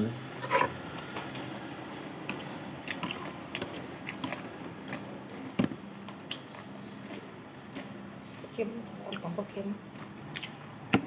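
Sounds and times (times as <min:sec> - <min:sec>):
eating sounds: 0:02.3 - 0:11.0.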